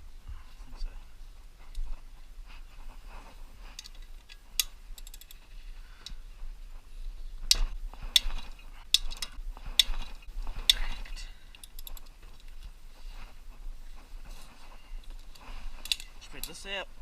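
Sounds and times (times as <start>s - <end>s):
metal tools clicking on engine: 3.8s - 5.4s, 11.5s - 12.5s, 15.3s - 16.7s.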